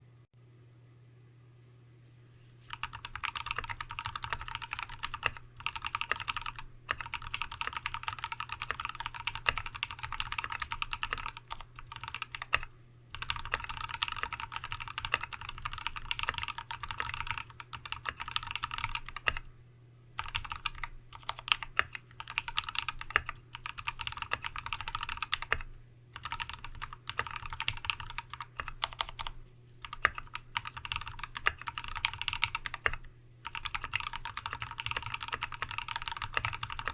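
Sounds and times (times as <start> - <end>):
mechanical keyboard typing: 2.7 - 19.4, 20.2 - 36.9.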